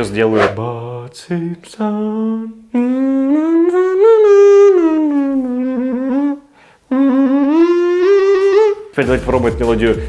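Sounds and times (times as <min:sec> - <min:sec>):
man humming a tune: 0:02.7 - 0:09.0.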